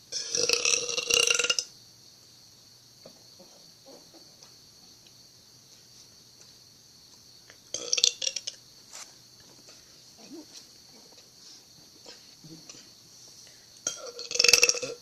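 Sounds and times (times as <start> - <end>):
person burping: 13.9 - 15.0.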